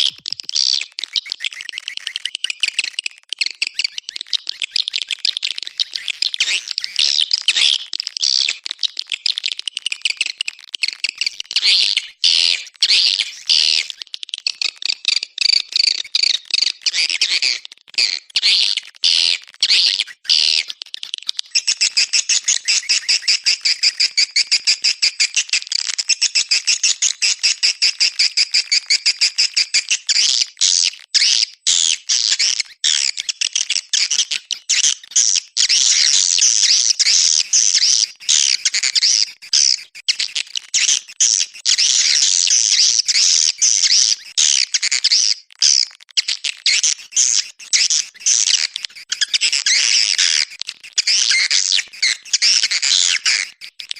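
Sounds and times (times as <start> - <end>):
swiftlets twittering: 35.8 - 45.2, 46.2 - 53.9.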